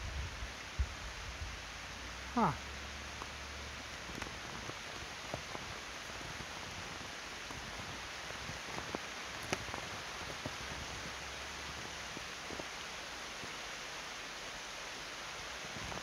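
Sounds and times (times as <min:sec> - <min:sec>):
steady hiss: 0:00.0 - 0:16.0
faint clicks: 0:08.6 - 0:11.1.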